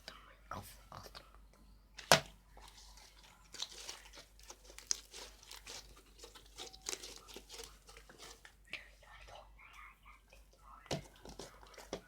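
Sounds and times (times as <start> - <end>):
slime crackling and popping: 3.4 - 8.6.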